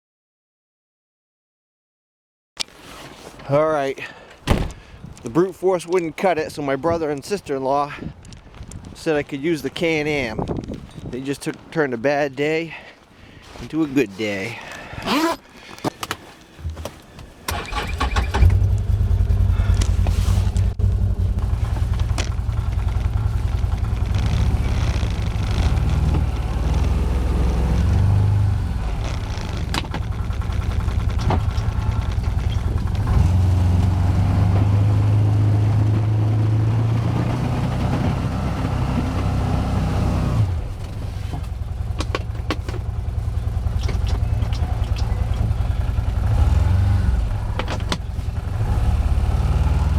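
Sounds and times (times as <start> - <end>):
engine starting and running: 17.4 - 49.9.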